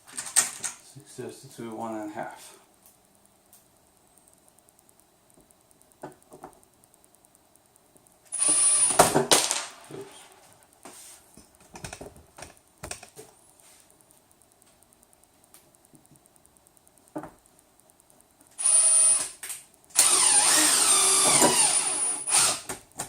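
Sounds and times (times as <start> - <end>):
power drill running: 8.3 - 9.1, 18.6 - 22.7.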